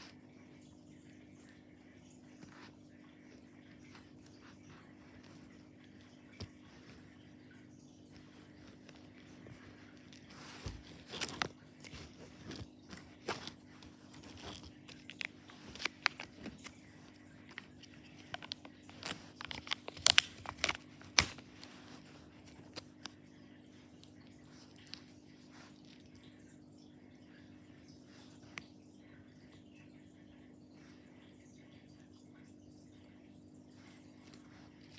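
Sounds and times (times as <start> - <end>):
crunchy crackles: 8.2 - 23.2.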